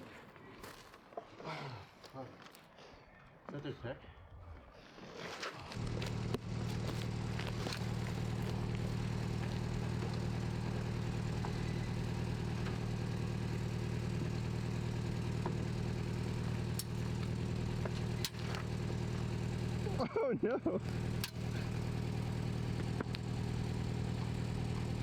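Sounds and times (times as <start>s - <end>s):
vehicle engine idling: 5.7s - 25.0s
sharp clicks: 15.4s - 19.1s, 20.8s - 23.3s.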